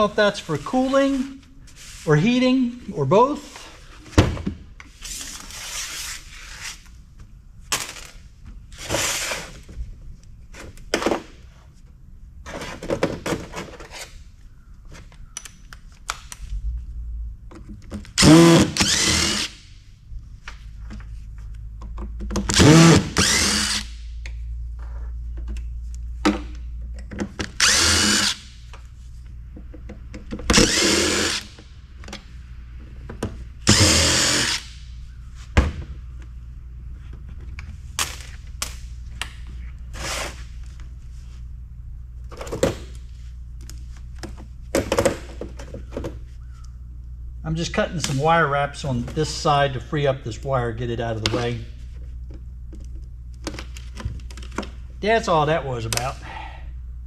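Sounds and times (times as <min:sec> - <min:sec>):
cordless drill whining in bursts: 0:18.2 - 0:19.6, 0:22.5 - 0:23.9, 0:27.6 - 0:28.5, 0:30.5 - 0:31.6, 0:33.7 - 0:34.7.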